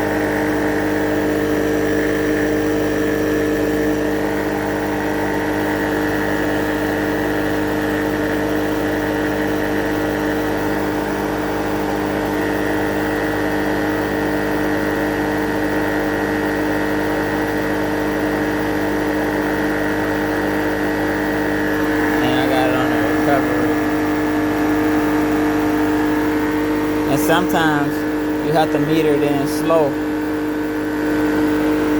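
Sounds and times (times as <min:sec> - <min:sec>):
compressor and fan humming: 0:00.0 - 0:31.9.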